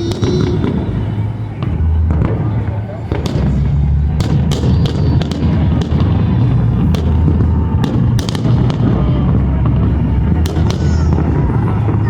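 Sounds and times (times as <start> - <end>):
fireworks booms and cracks: 0.0 - 12.0.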